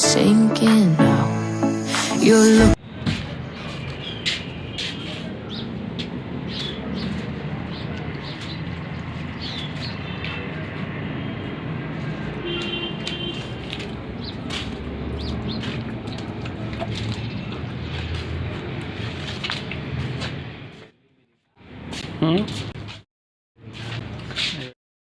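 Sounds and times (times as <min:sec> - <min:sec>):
traffic hum: 0:02.8 - 0:21.0.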